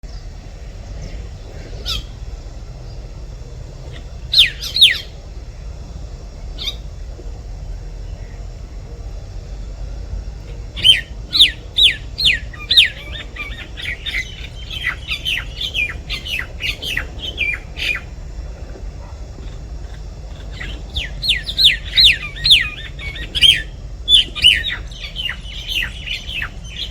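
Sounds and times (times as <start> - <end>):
myna calling: 3.8 - 5.3, 10.5 - 18.2, 19.0 - 26.9.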